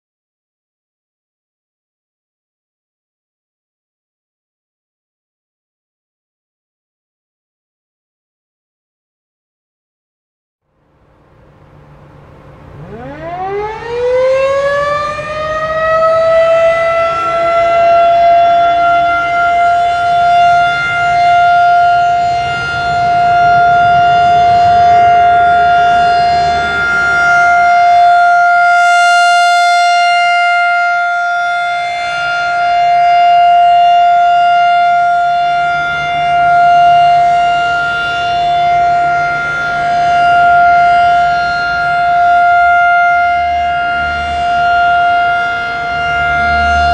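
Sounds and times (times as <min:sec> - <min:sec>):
outdoor warning siren steady tone: 0:10.7 - 0:46.9.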